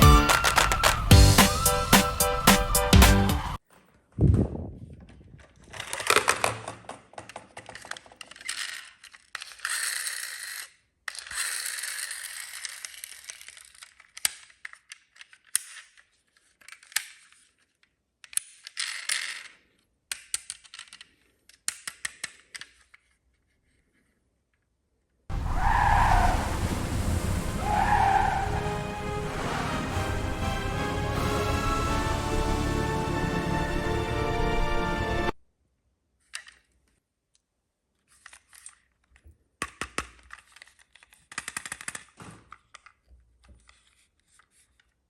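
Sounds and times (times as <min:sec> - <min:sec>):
music: 0:00.0 - 0:03.6, 0:28.6 - 0:35.4
toy cars clattering on hard surface: 0:05.4 - 0:24.1, 0:36.2 - 0:37.0, 0:38.0 - 0:45.0.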